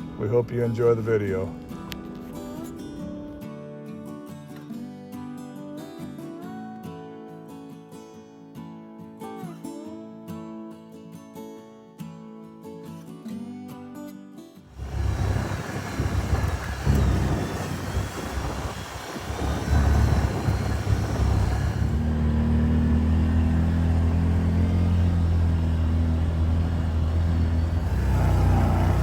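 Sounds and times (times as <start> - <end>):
rushing noise: 14.8 - 23.6
off-road vehicle engine running: 14.8 - 29.0.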